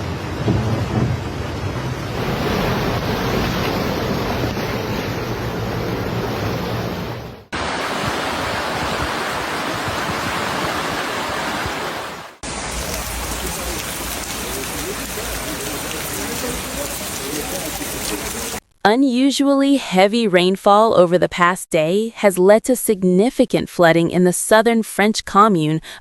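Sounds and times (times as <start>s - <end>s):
rushing floodwater: 0.0s - 18.6s.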